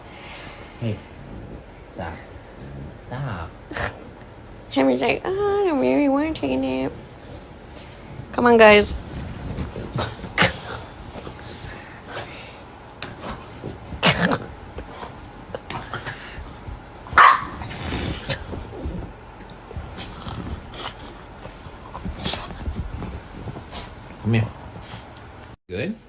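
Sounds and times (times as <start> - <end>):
soft scattered noises: 4.0 - 25.6
small dog barking: 17.2 - 17.6.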